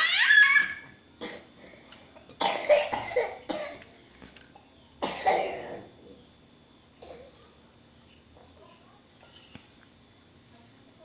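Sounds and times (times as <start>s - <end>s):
person coughing: 2.4s - 3.8s.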